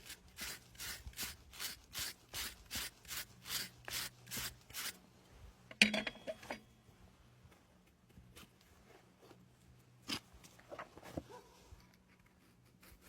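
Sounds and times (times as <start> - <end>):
rasp filing a hoof: 0.0 - 5.0.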